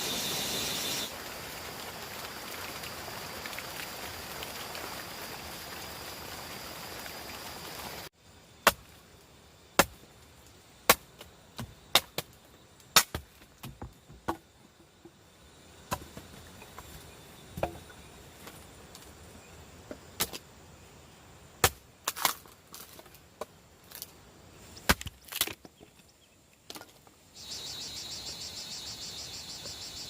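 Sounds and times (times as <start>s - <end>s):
steady rain hiss: 0.0s - 24.9s, 26.0s - 30.0s
chopping strikes on wood: 8.6s - 8.9s, 9.8s - 10.0s, 13.0s - 14.4s, 21.6s - 22.3s.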